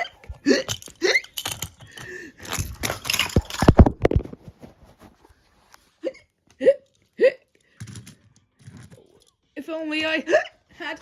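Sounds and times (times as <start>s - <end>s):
clattering knocks and rustling: 0.2s - 5.2s.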